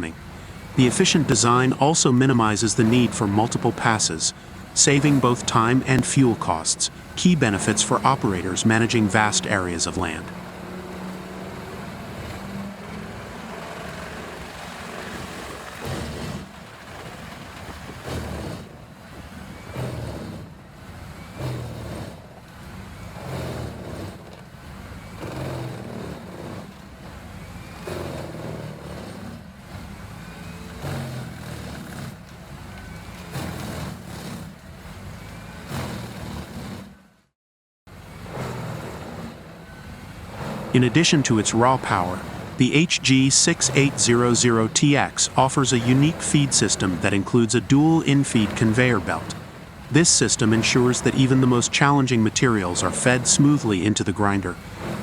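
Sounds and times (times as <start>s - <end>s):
wood grinder drone: 9.9s - 18.8s.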